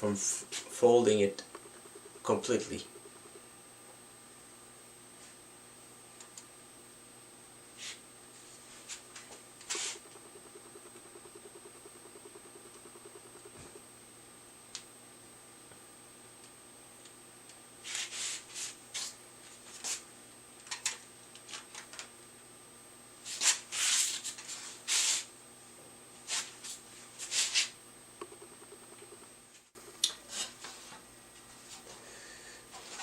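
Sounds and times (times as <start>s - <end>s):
steel fan blades scraping: 7.8s - 10.2s, 17.8s - 20.0s.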